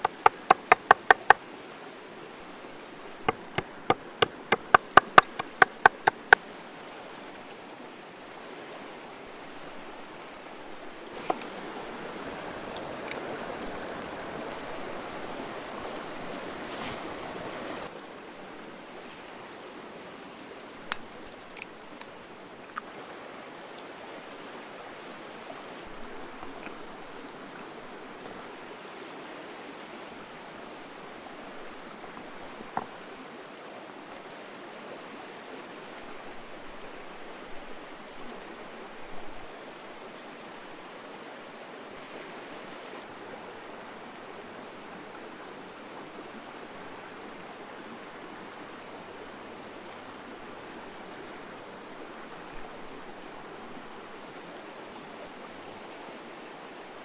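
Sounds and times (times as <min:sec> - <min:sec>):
sharp knocks: 0:00.0 - 0:01.4, 0:03.3 - 0:06.4
stream running: 0:00.0 - 0:57.0.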